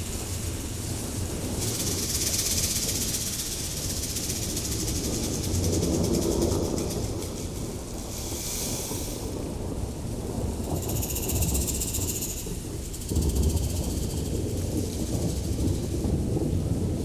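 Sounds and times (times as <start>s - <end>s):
low steady rumble: 0.0s - 17.0s
airy hissing: 7.2s - 9.4s, 10.6s - 14.3s.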